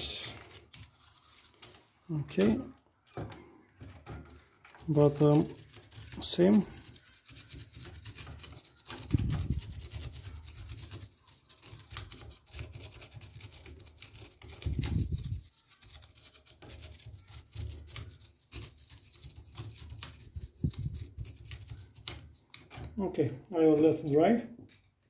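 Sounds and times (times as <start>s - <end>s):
brush scrubbing circuit board: 0.0s - 1.6s, 4.8s - 22.2s.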